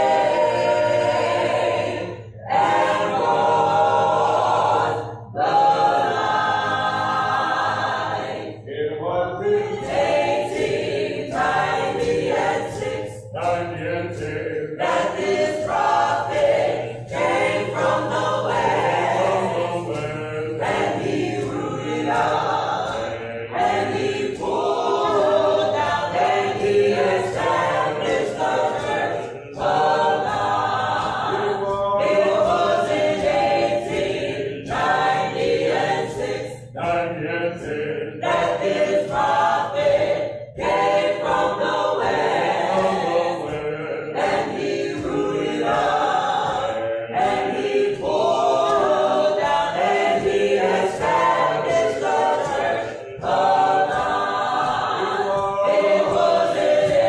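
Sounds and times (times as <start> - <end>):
choir singing a cappella: 0.0 - 57.0.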